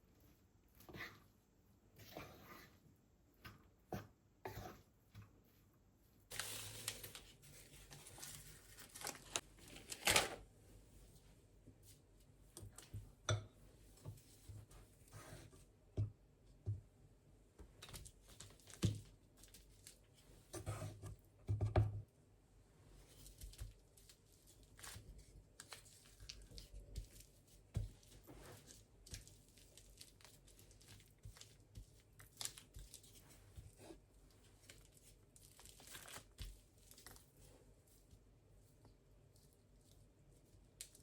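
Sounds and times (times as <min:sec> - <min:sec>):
rustling or tearing: 0:06.3 - 0:10.4, 0:34.6 - 0:37.3.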